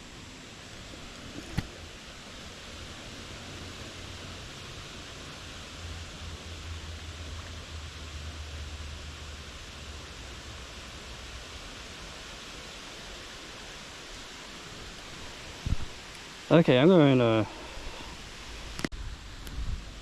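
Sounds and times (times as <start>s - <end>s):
flowing creek water: 0.0s - 20.0s.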